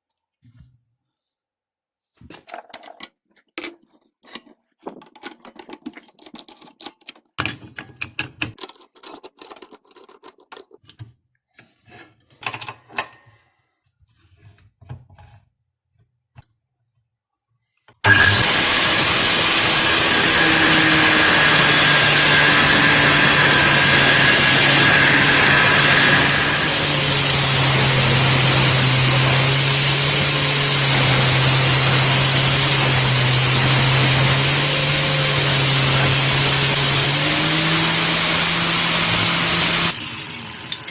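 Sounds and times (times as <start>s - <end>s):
clicks and knocks of parts handled: 2.3s - 11.1s
angle grinder whining: 18.0s - 40.9s.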